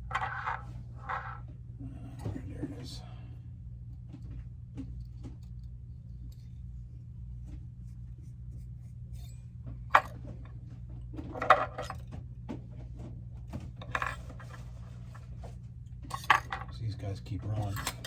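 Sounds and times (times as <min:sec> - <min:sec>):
steady low hum: 0:00.0 - 0:18.0
clicking and scraping: 0:17.5 - 0:18.0.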